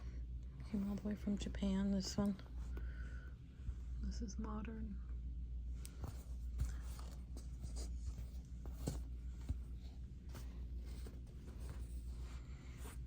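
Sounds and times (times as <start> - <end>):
steady low hum: 0.0 - 13.0
scratchy rubbing and rustling: 6.0 - 13.0.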